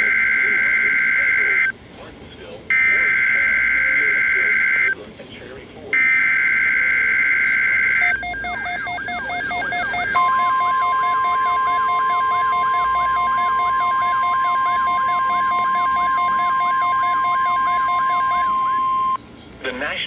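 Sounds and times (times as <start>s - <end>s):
steady warning tone: 0.0s - 1.8s, 2.7s - 5.0s, 6.0s - 19.2s
electronic siren-like alarm: 6.0s - 19.2s
pulsing beeps: 6.0s - 19.2s.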